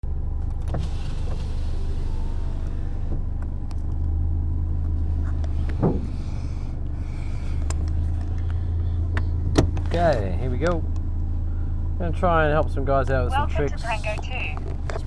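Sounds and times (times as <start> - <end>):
short thump: 5.5 - 6.4.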